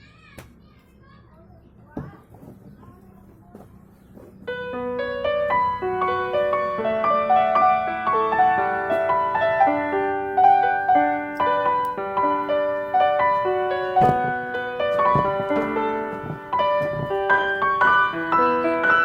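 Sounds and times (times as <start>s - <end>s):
piano melody: 4.4s - 19.0s.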